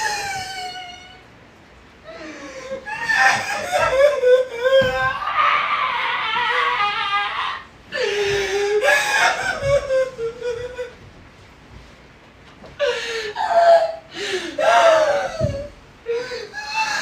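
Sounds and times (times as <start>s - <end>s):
high-pitched crying and whimpering: 2.1s - 10.9s, 13.4s - 17.0s.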